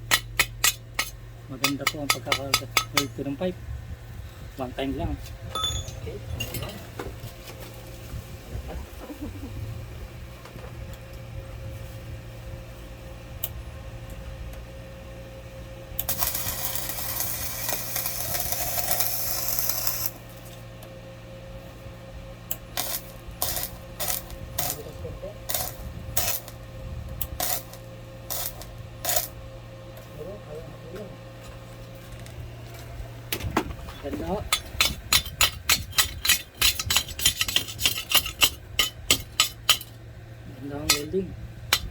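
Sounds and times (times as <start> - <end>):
steady hum: 0.0 - 41.9
welding arc hissing and crackling: 16.0 - 20.4, 22.5 - 26.7, 27.3 - 29.4.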